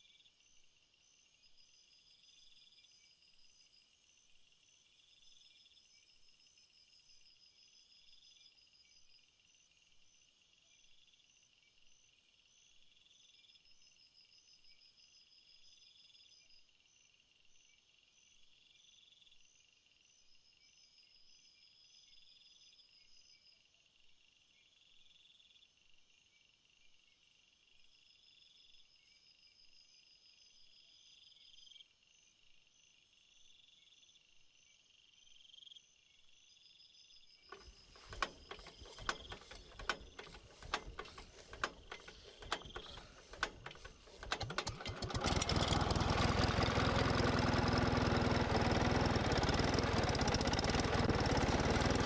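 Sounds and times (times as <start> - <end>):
sharp knocks and clicks: 37.5 - 45.6
loud machine humming: 44.2 - 52.0.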